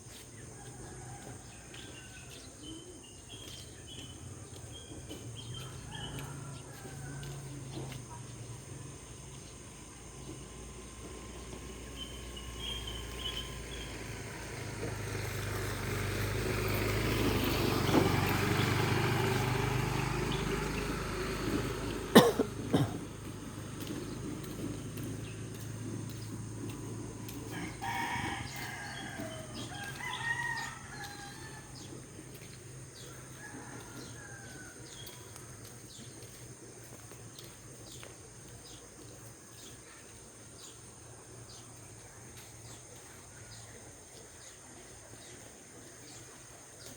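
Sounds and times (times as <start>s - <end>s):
rooster crowing: 5.6s - 7.9s, 27.5s - 35.4s.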